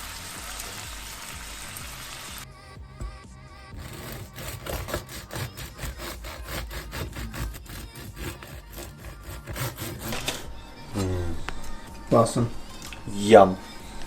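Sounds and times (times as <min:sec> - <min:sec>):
knife sawing on wooden board: 0:03.0 - 0:10.4.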